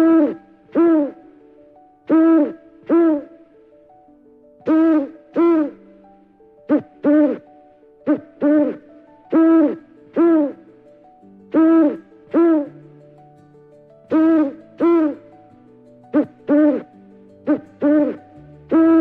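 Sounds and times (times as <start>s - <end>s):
owl hooting: 0.0s - 1.3s, 2.1s - 3.4s, 4.6s - 5.9s, 6.7s - 7.5s, 8.1s - 10.7s, 11.5s - 12.8s, 14.1s - 15.3s, 16.1s - 19.0s.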